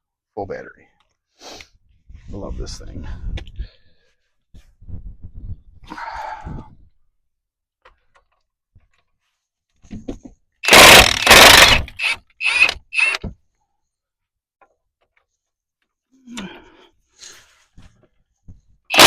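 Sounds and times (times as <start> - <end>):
impact wrench hammering: 10.7 - 13.2.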